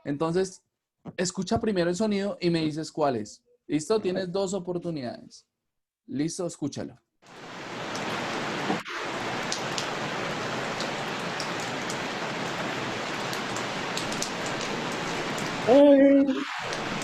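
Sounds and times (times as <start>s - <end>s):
steady rain falling: 7.3s - 17.0s.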